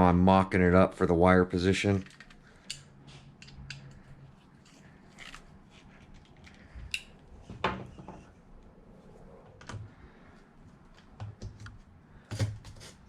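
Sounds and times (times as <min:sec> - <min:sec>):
hands handling wires clicking: 0:02.0 - 0:07.3.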